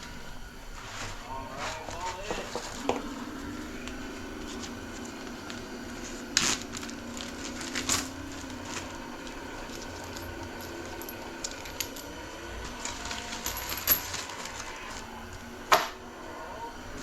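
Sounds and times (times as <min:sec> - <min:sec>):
steady low hum: 0:00.0 - 0:17.0
metal parts clicking and clinking: 0:06.5 - 0:15.1.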